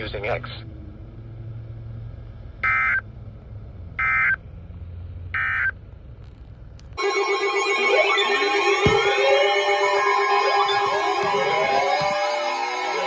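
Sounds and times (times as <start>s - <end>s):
siren-like sliding tones: 7.0s - 13.0s.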